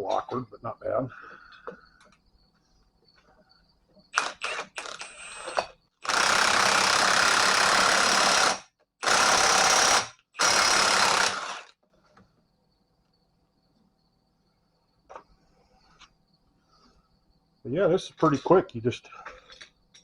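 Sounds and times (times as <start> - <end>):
impact wrench bursts: 4.1 - 11.7.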